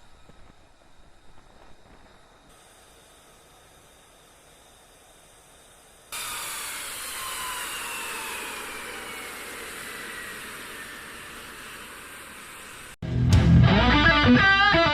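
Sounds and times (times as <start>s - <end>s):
faint steady hiss: 0.0s - 6.9s
jet engine roar with falling whine: 0.0s - 13.0s.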